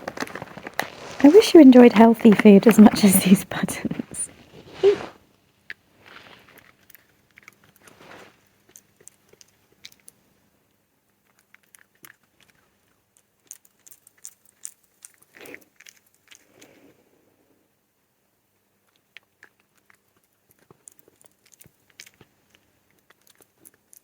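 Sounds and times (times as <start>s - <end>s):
fox chewing and crunching treats: 0.0s - 4.1s, 5.7s - 17.0s, 18.7s - 24.0s
soft rustles: 0.0s - 5.2s, 5.9s - 8.6s.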